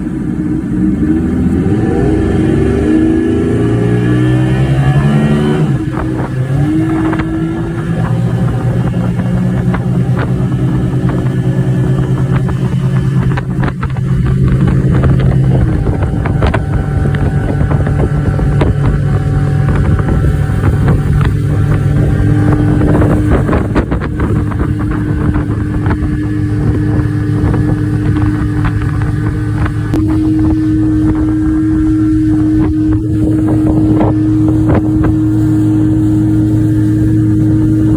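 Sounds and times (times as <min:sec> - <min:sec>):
boat motor running: 0:00.0 - 0:37.9
higher steady tone: 0:00.0 - 0:37.9
wind on microphone: 0:00.0 - 0:37.9.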